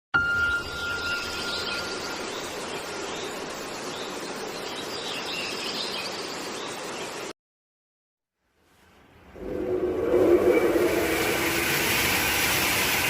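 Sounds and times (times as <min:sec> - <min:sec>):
hissing workshop machine noise: 0:10.0 - 0:13.0.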